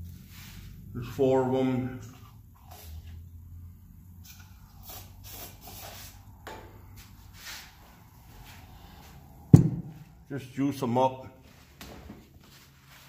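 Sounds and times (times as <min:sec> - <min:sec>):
sharp knock: 0:09.5 - 0:10.0.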